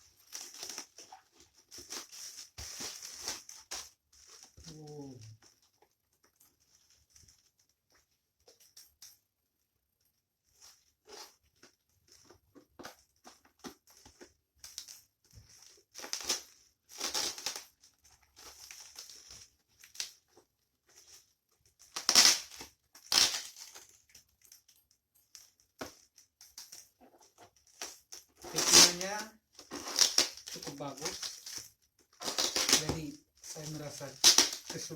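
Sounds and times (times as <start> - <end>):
loud ripping of packaging: 28.5 - 31.4, 32.2 - 34.9
packaging crinkling and tearing: 28.5 - 31.6, 32.2 - 34.9.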